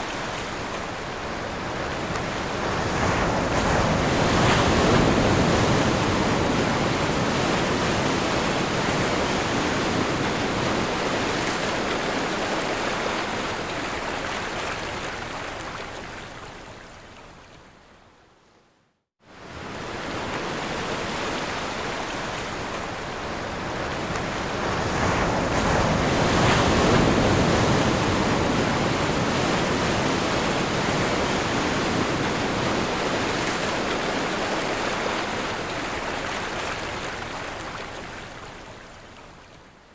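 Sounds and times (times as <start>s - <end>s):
ocean surf breaking: 1.4s - 13.8s, 19.6s - 37.4s.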